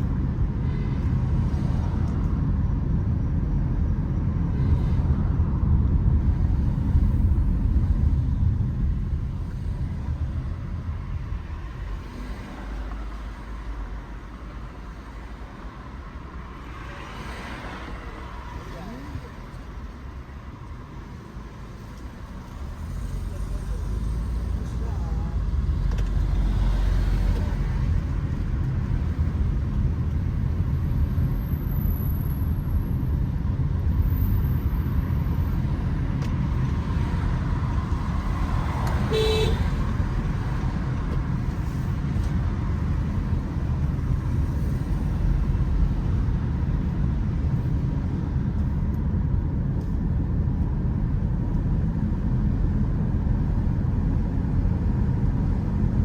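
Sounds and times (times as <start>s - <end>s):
road traffic rumble: 0.0s - 56.0s
car horn toot: 39.0s - 39.9s.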